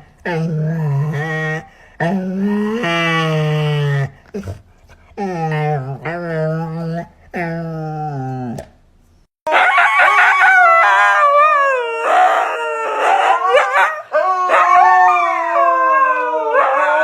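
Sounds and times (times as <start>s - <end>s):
dog howling: 9.5s - 17.0s.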